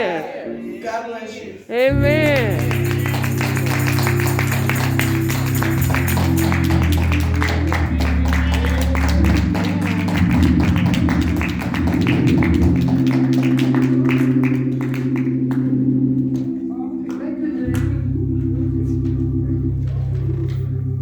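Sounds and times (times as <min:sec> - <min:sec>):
church music chords: 0:00.0 - 0:21.0.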